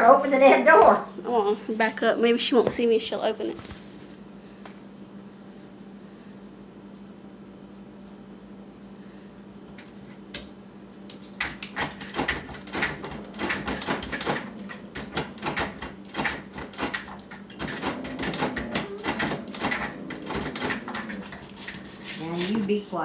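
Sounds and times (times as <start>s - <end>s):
dog claws scratching at door: 11.1s - 22.6s.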